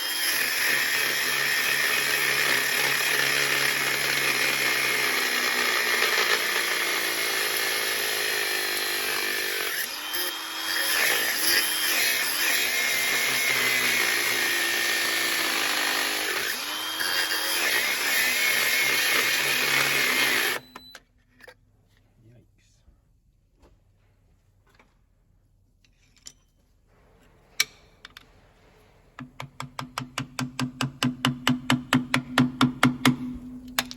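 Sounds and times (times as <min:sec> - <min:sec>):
angle grinder cutting metal: 0:00.0 - 0:20.8.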